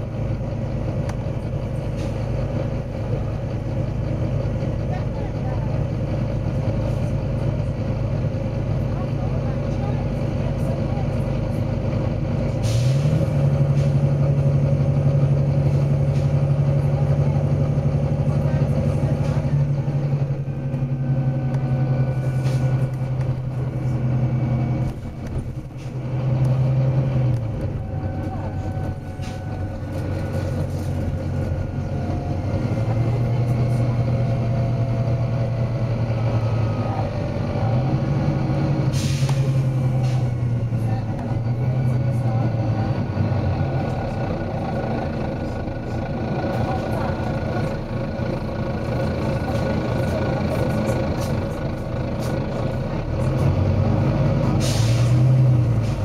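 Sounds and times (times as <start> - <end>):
bus engine running: 0.0 - 56.0
air brake hisses: 12.6 - 14.0, 38.9 - 40.3, 54.6 - 56.0.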